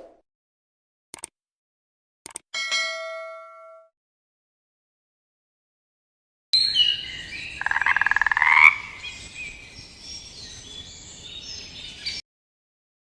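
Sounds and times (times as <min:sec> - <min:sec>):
frog rattling croak: 0:07.6 - 0:09.0.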